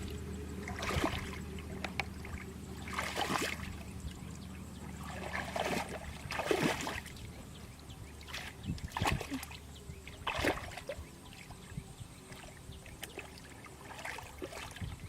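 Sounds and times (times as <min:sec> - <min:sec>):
water splashing: 0:00.0 - 0:15.0.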